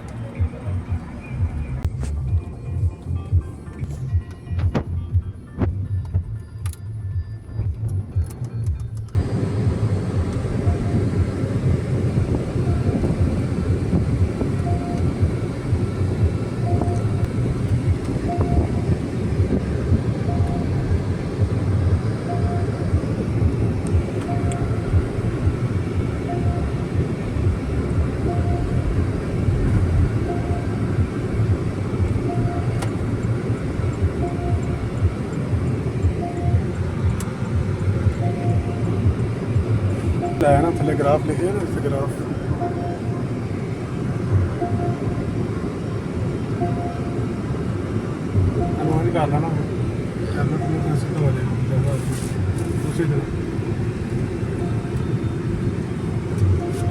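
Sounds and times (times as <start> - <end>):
car engine rumbling: 0.0 - 56.9
faint short beep: 56.4 - 56.9.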